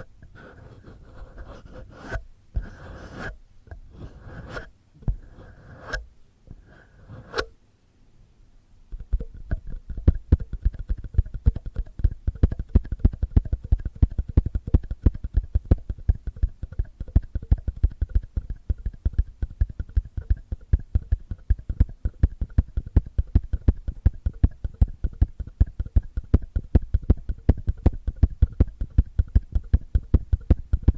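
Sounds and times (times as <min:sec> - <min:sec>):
fingertips rubbing on microphone: 0:00.0 - 0:07.5, 0:08.9 - 0:30.9
dull bassy taps on microphone: 0:08.9 - 0:30.9.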